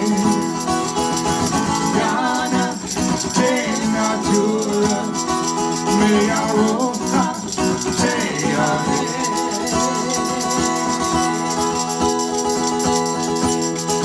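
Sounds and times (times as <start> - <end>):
person singing: 0.0 - 12.8
steady percussion beat: 0.0 - 14.0.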